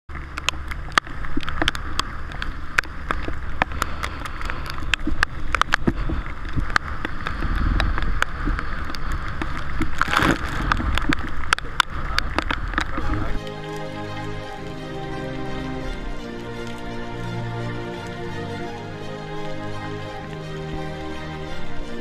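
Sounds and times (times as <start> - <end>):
underwater clicks and crackle: 0.1 - 15.0
low underwater rumble: 0.1 - 22.0
rushing water swoosh: 0.1 - 22.0.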